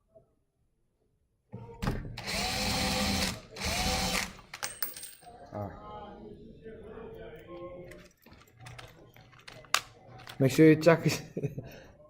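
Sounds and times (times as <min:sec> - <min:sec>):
electric drill boring into wood: 0:02.2 - 0:04.4.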